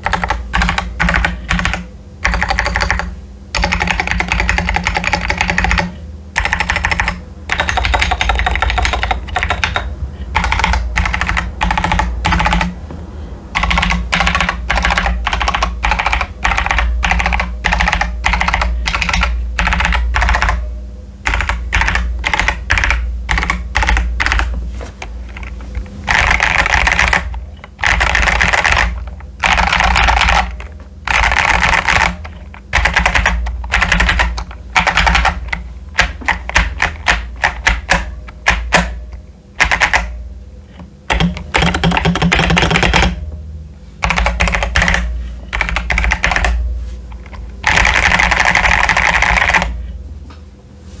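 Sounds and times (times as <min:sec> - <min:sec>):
steady low hum: 0:00.0 - 0:51.0
mechanical keyboard key clacks: 0:41.1 - 0:43.2.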